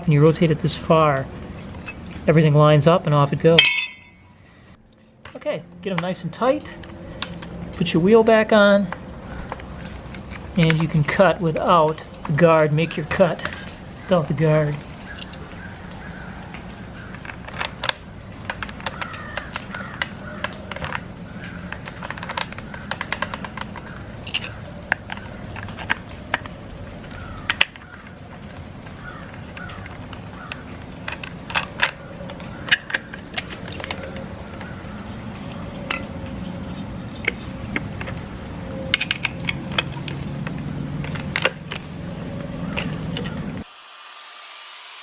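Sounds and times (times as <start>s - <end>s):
metal tools clinking: 3.5s - 4.4s, 29.0s - 34.8s, 35.4s - 43.4s.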